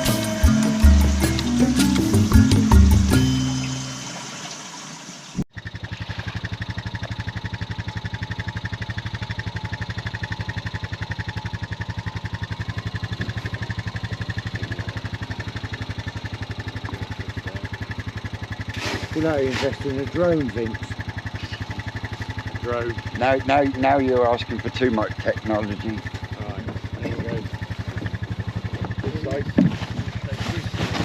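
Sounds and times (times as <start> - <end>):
intro music: 0.0 - 4.5
motor running with steady throb: 0.0 - 31.0.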